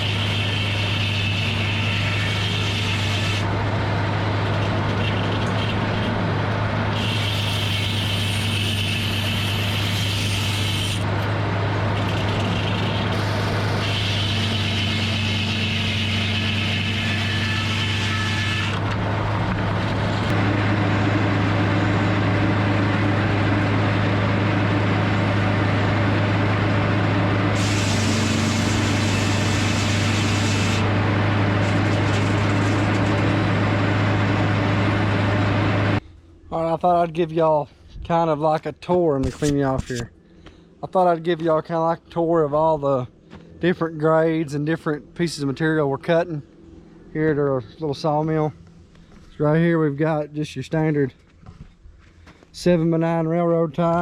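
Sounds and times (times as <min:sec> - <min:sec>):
sawmill engine drone: 0:00.0 - 0:37.8.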